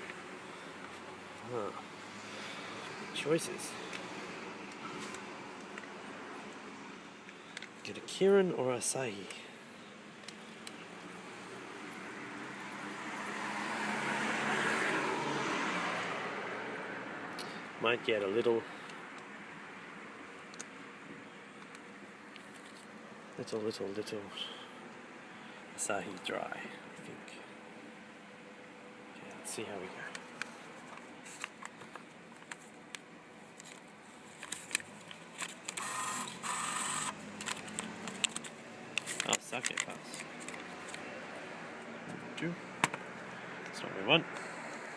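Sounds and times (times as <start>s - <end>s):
car passing: 11.0s - 17.8s
vending machine mechanism whirring: 34.5s - 38.5s.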